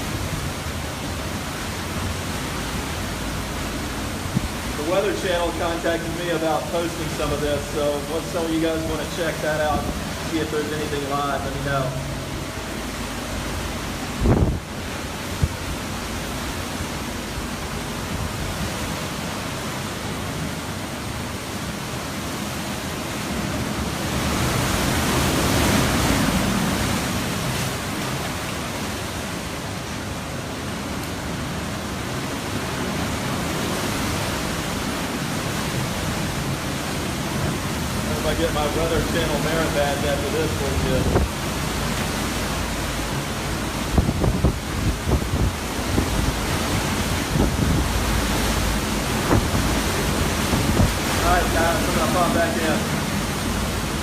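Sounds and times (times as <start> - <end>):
strong wind rushing: 4.1 - 16.3, 37.5 - 54.0.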